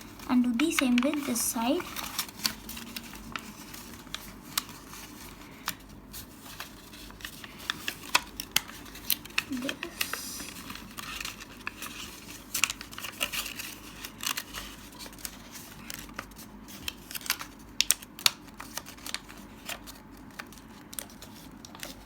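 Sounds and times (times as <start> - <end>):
paper creases crackling: 0.0 - 22.0
paper rustling and crinkling: 0.0 - 22.0.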